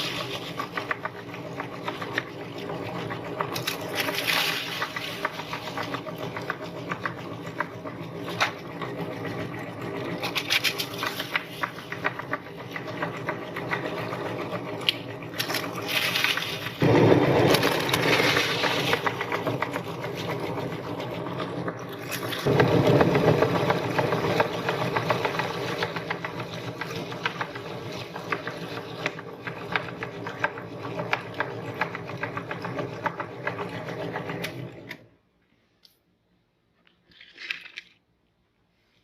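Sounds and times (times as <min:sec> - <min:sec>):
electric meat grinder running: 0:00.0 - 0:35.0
crackling and crunching: 0:03.5 - 0:06.8, 0:10.2 - 0:12.4, 0:14.8 - 0:20.4.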